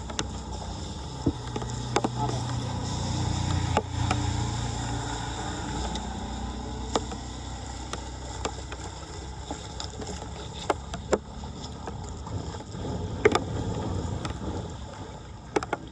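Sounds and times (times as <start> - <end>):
floodwater rushing into storm drain: 0.0 - 15.9
sharp knocks and clicks: 1.2 - 2.6, 6.9 - 11.3, 15.5 - 15.9.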